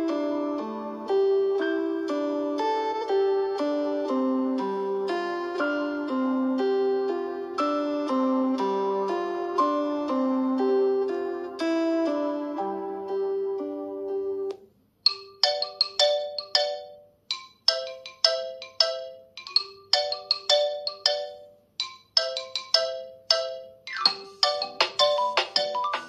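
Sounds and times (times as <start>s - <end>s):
held ringtone chord: 0.0s - 14.5s, 15.1s - 26.0s
ringtone melody of struck notes: 0.0s - 26.0s.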